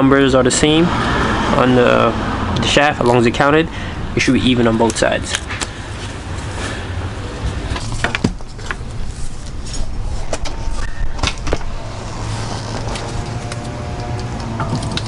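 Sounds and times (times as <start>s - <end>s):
low hum: 5.7s - 15.0s.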